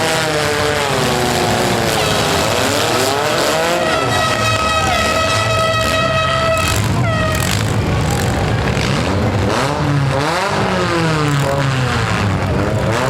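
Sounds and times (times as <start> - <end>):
tire squeal: 0.0 - 9.0
car engines revving: 0.0 - 13.0.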